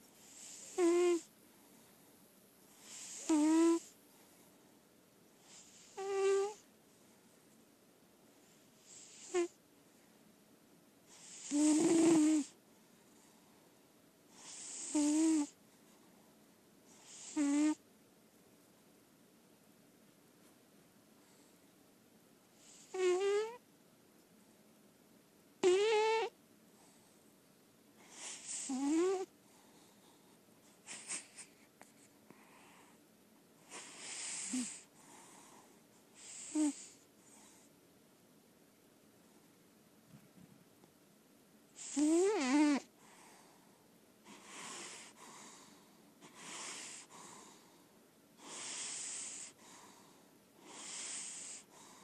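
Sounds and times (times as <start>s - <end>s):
cat snoring: 0.2s - 1.3s, 2.8s - 4.0s, 5.4s - 6.6s, 8.4s - 9.6s, 11.1s - 12.6s, 14.3s - 15.6s, 16.9s - 17.8s, 22.6s - 23.6s, 25.6s - 27.0s, 28.0s - 29.9s, 33.7s - 37.7s, 41.8s - 43.5s, 44.2s - 47.8s, 48.4s - 52.0s.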